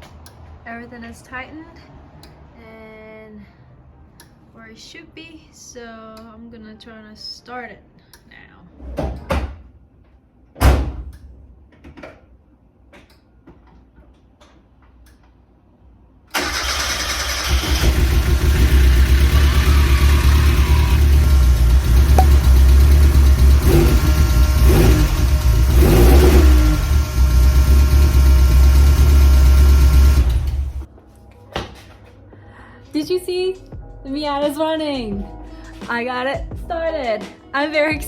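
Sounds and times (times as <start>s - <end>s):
car engine running rough: 17.4s - 30.9s.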